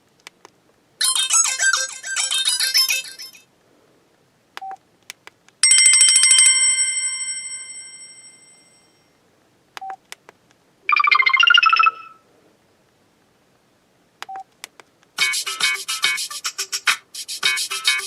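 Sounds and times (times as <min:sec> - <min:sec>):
bell-like ringtone: 0:01.0 - 0:03.4, 0:05.6 - 0:09.1.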